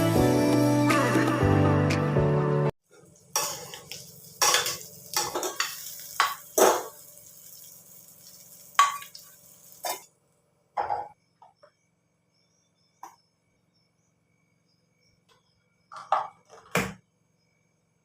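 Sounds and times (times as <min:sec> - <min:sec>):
fish frying: 0:02.9 - 0:10.1
utensil scraping and clinking in pan: 0:03.4 - 0:07.0.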